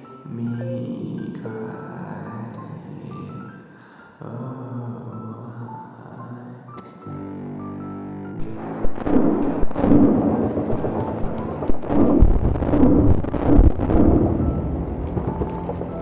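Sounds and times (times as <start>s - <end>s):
rumbling booms and crashes: 8.4s - 16.0s.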